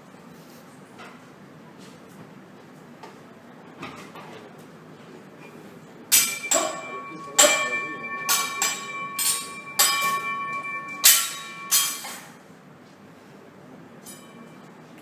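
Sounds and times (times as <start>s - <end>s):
metal object struck ringing: 6.1s - 12.4s.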